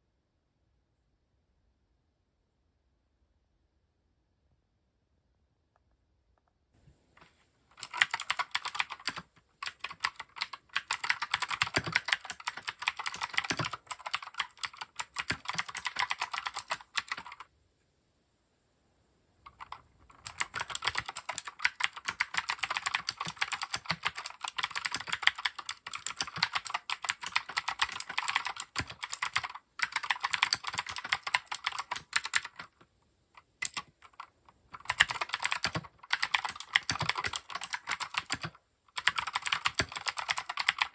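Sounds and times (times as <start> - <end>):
mechanical keyboard typing: 7.8 - 17.4, 19.5 - 32.8, 33.4 - 40.9.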